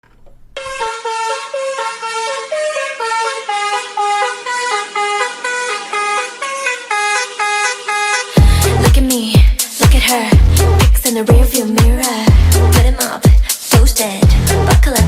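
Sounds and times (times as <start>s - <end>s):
honking car-horn-like melody: 0.6s - 8.9s
heavy bass-drum beat: 8.4s - 15.0s.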